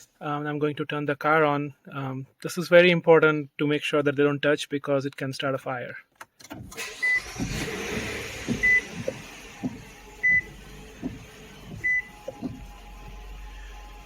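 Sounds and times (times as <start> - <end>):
car engine starting and idling: 6.4 - 14.0
dashboard warning chime: 8.4 - 12.3.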